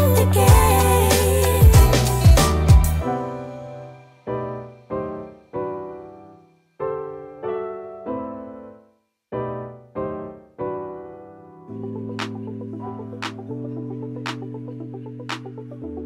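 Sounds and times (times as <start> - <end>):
music with steady low beat: 0.0 - 3.0
slow piano chords: 0.0 - 16.0.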